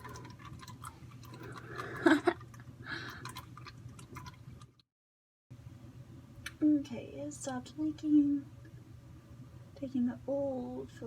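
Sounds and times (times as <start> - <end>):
low steady hum: 0.0 - 4.8, 5.5 - 11.0.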